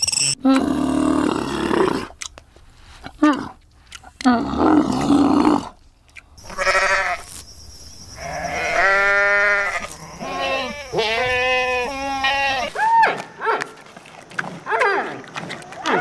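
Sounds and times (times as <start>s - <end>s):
sheep or goat bleating: 6.4s - 7.3s, 8.2s - 12.8s.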